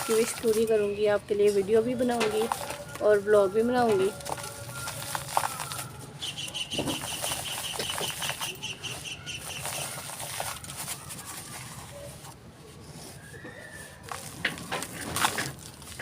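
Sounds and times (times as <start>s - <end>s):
dry material crumbling crackles: 0.0s - 12.4s, 13.1s - 16.0s
bird chirping: 5.6s - 9.8s.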